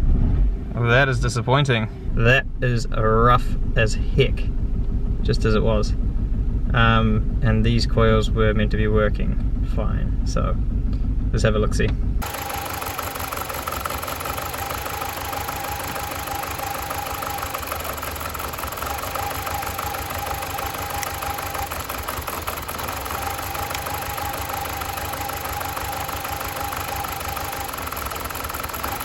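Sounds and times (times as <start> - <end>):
car engine idling roughly: 12.2 - 29.0.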